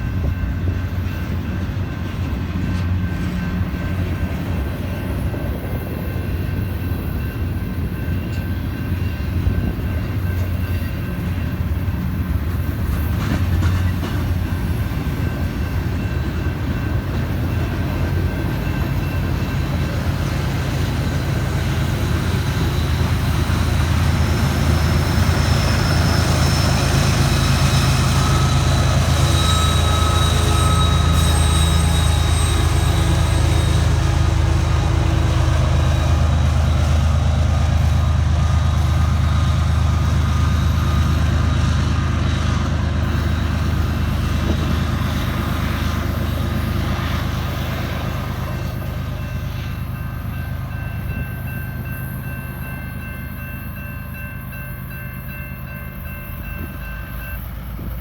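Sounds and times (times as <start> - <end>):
high wheel squeals: 17.6 - 37.1, 37.7 - 58.0.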